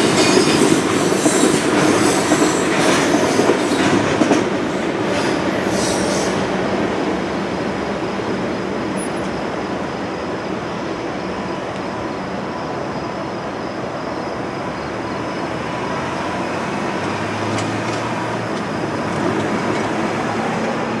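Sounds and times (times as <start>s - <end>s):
freight train rolling past: 0.0s - 21.0s.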